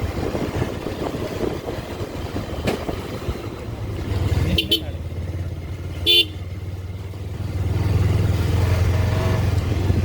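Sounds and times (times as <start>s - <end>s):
motorcycle engine running: 0.0s - 10.0s
horn toot: 6.0s - 6.4s.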